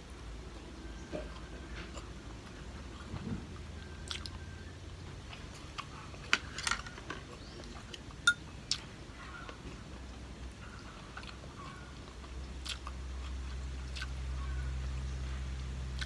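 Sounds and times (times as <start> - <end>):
person chewing food: 1.2 - 4.5, 5.1 - 6.6, 11.0 - 16.0.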